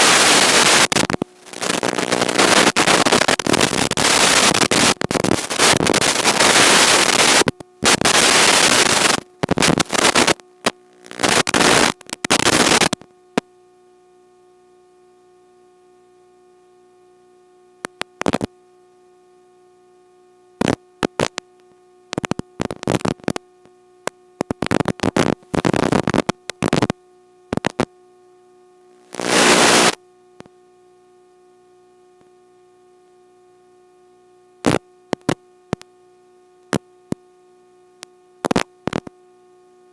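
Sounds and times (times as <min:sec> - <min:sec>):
radio static bursts: 0:00.0 - 0:13.0, 0:17.9 - 0:18.5, 0:20.6 - 0:21.4, 0:22.2 - 0:23.4, 0:24.4 - 0:27.9, 0:29.0 - 0:30.0, 0:34.6 - 0:35.4, 0:38.4 - 0:39.1
steady electronic buzz: 0:00.0 - 0:13.5, 0:17.8 - 0:18.5, 0:20.6 - 0:27.9, 0:28.8 - 0:30.0, 0:34.6 - 0:35.9, 0:38.4 - 0:39.1.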